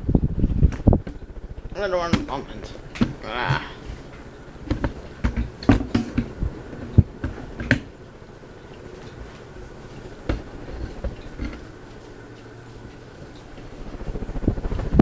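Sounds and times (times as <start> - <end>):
faint steady hum: 0.0 - 15.0
sharp clicks and knocks: 2.1 - 7.9.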